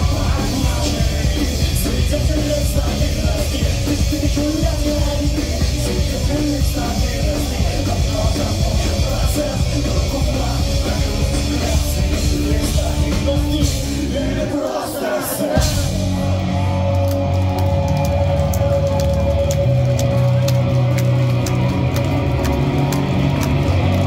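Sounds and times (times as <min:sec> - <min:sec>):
voices singing: 0:00.0 - 0:16.3
loud live rock band: 0:00.0 - 0:24.0.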